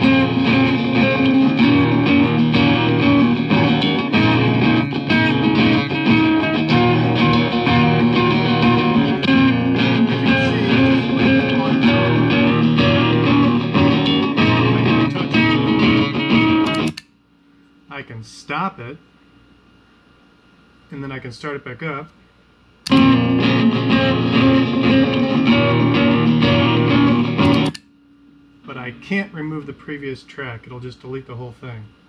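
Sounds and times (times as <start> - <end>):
looped electric guitar strumming: 0.0 - 17.0, 22.9 - 27.9.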